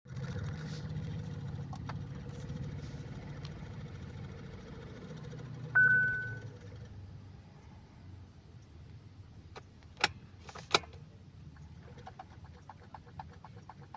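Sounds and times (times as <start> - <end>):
low steady hum: 0.1 - 12.7
short warning beep: 5.8 - 6.5.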